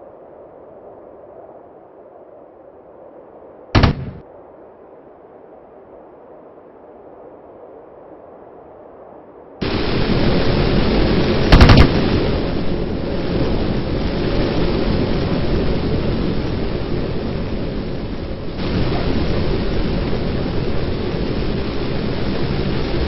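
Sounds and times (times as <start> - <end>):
loud blast: 3.8 - 4.2, 11.4 - 12.5.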